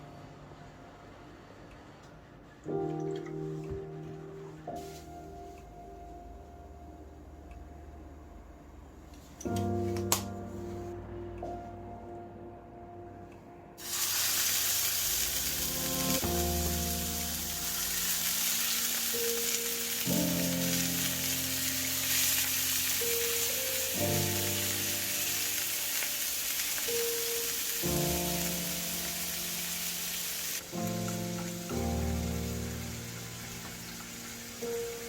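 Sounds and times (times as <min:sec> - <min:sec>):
background music: 0:02.6 - 0:35.0
food sizzling in oil: 0:13.8 - 0:35.0.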